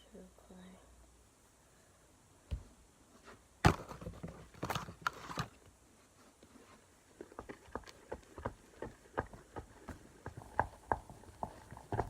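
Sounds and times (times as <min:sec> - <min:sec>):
crinkling clicks and rustling: 0:03.7 - 0:05.7.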